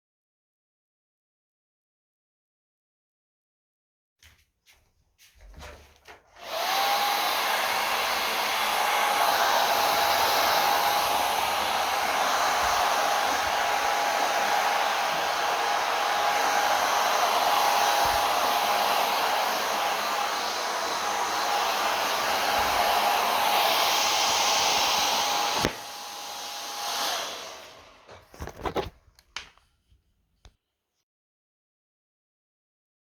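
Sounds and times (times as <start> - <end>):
hair dryer running: 5.6 - 28.9.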